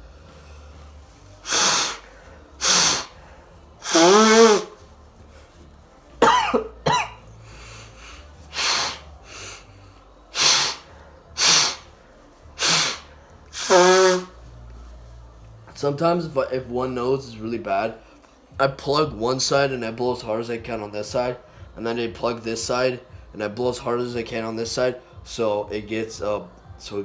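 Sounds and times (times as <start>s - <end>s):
man blowing his nose: 0.1s - 5.0s, 6.2s - 14.5s.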